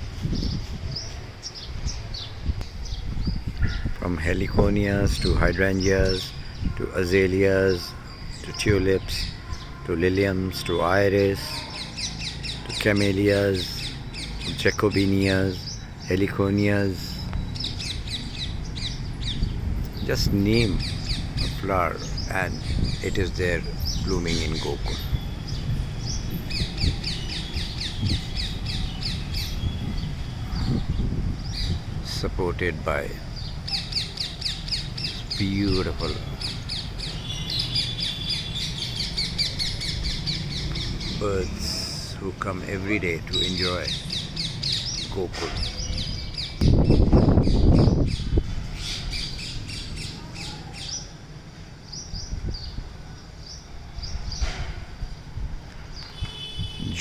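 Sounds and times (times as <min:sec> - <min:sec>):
birds squawking and chirping: 0:00.0 - 0:57.0
other bird calls: 0:33.2 - 0:51.2, 0:55.9 - 0:57.0.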